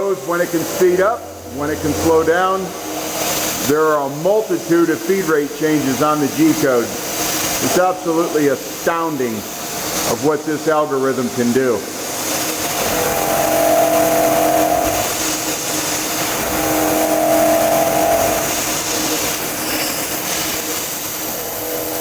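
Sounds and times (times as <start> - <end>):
end mill cutting hiss: 0.0 - 22.0
pitched singing tone: 12.7 - 19.0.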